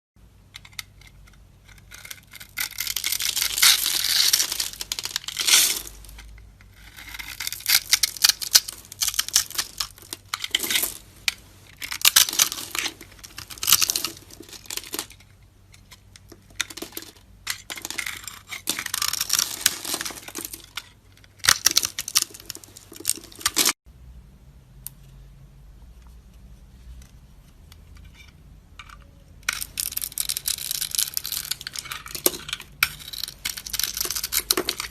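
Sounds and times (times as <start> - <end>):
knife scraping dry soap: 0.7 - 10.9, 30.3 - 32.2.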